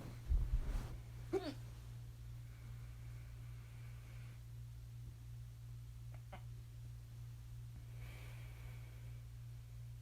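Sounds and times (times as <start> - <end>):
steady low hum: 0.0 - 10.0
person hiccuping: 1.3 - 1.6.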